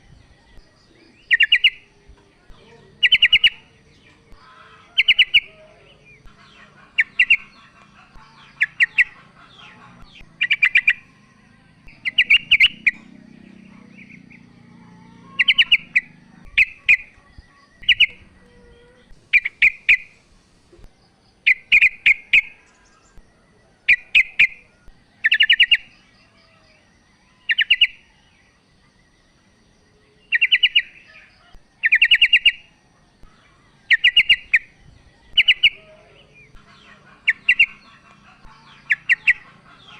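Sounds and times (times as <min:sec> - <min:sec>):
bird chattering calls: 0:00.6 - 0:11.3, 0:11.9 - 0:20.2, 0:21.4 - 0:23.2, 0:25.2 - 0:25.9, 0:27.4 - 0:28.1, 0:30.3 - 0:32.7, 0:33.8 - 0:39.9.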